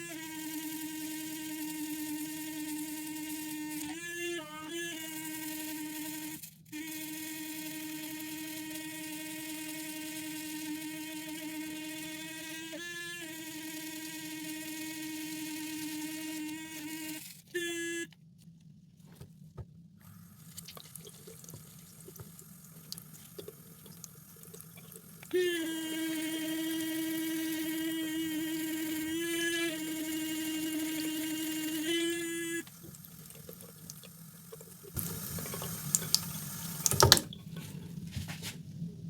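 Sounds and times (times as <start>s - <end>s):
small electric motor tool humming: 0.0s - 18.1s, 24.8s - 33.0s.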